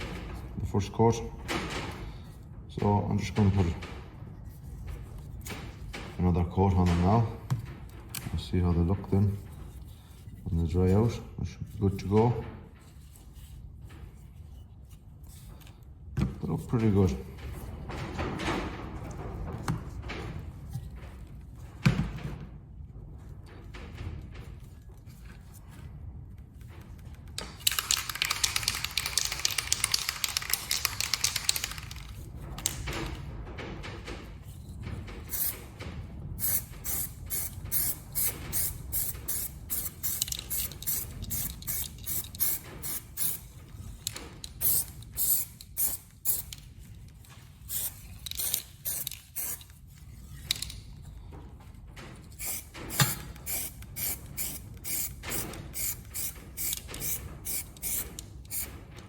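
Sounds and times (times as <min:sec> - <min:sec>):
spray-paint can hissing: 0:35.3 - 0:35.5, 0:36.4 - 0:43.4, 0:44.6 - 0:46.5, 0:47.7 - 0:49.7, 0:52.4 - 0:58.7.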